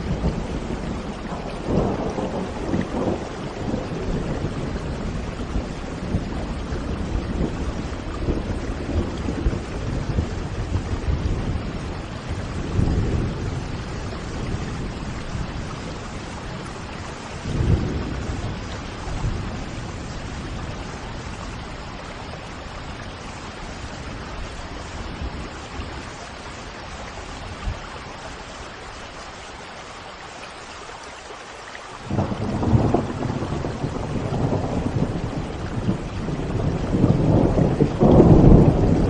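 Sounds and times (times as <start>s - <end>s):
thunder rumbles: 0.0s - 27.8s, 32.0s - 39.0s
steady rain: 0.0s - 39.0s.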